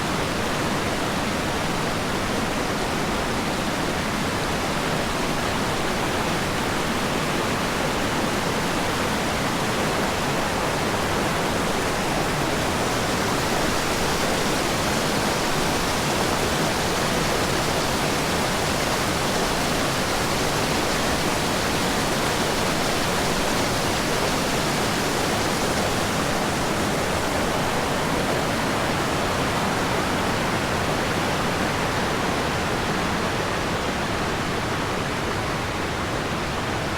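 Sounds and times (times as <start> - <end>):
creek rushing and splashing: 0.0 - 36.9.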